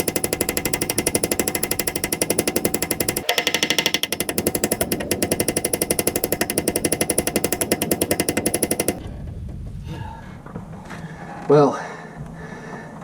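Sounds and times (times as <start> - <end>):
rapid power tool hammering: 0.0 - 9.0.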